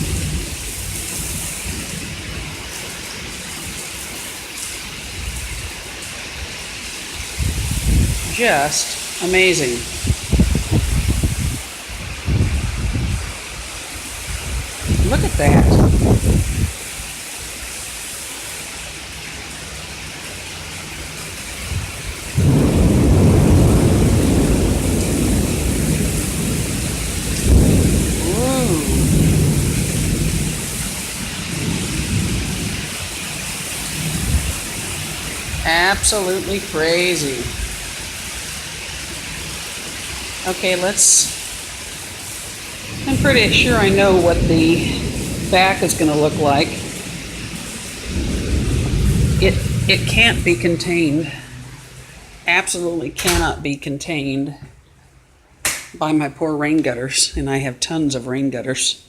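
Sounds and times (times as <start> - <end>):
rolling thunder: 0.0 - 2.7, 9.9 - 13.4, 14.1 - 16.8, 21.6 - 36.1, 42.8 - 52.4
heavy rain pouring: 0.0 - 56.2
water overflowing rain gutters: 0.0 - 59.0.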